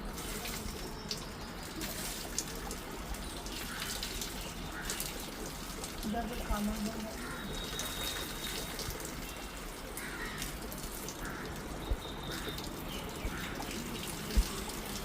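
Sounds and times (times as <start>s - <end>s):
water running and splashing: 0.0s - 15.0s.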